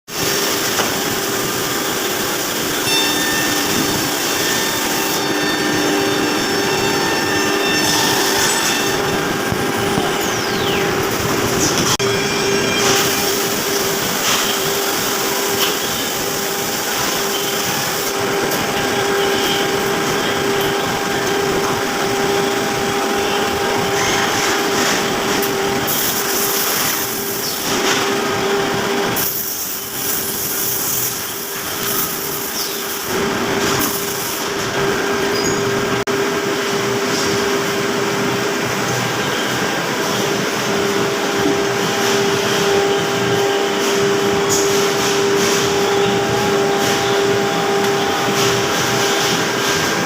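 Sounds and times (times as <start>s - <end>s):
machine spindle tone: 0.5s - 50.0s
cutting noise: 2.4s - 36.1s.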